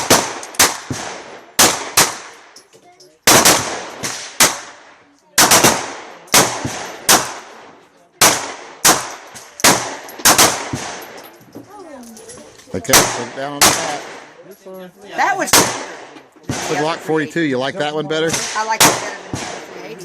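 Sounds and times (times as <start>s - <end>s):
handgun shots: 5.4s - 7.5s, 8.2s - 11.2s, 15.5s - 16.8s.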